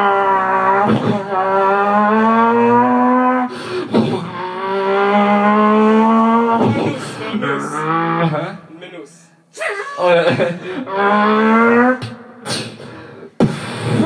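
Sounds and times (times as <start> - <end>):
person breathing in: 3.5 - 4.0, 10.6 - 10.9, 12.5 - 14.0
person holding vocal tones: 3.5 - 4.9, 6.5 - 8.7.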